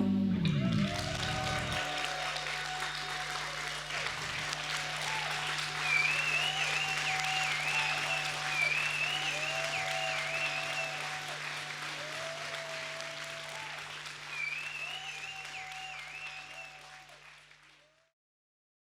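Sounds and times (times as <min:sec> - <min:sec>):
people cheering: 0:00.4 - 0:18.1
audience applauding: 0:00.5 - 0:18.1
wavering whistle: 0:05.2 - 0:11.4, 0:14.3 - 0:16.8.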